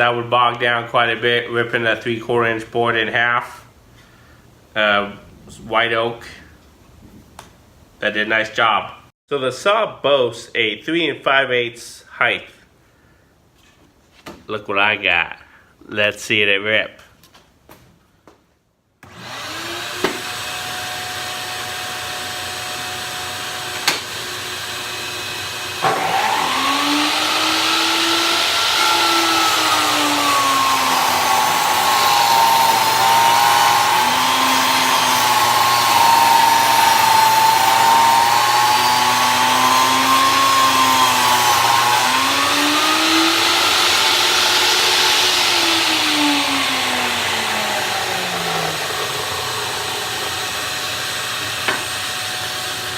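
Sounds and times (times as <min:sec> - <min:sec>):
shop vacuum running: 0:19.0 - 0:52.9
table saw cutting board: 0:19.0 - 0:52.9.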